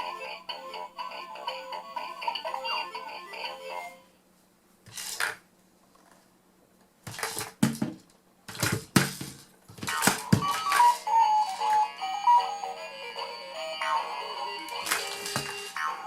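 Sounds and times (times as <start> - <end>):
toy electronic tune: 10.0 - 16.0.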